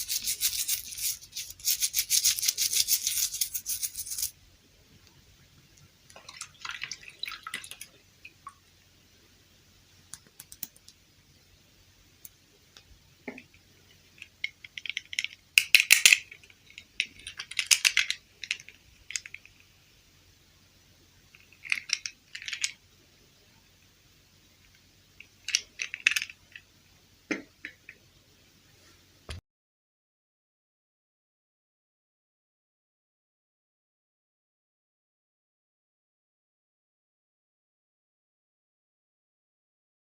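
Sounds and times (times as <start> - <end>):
plastic pieces clicking and rattling: 0.0 - 4.3, 14.2 - 19.5, 21.4 - 22.8, 25.4 - 26.6.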